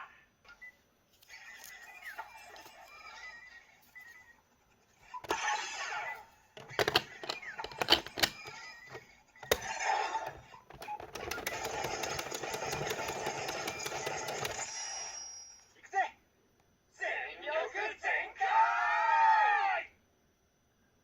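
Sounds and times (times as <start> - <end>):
crackling effect with rapid ticking: 10.9 - 14.8.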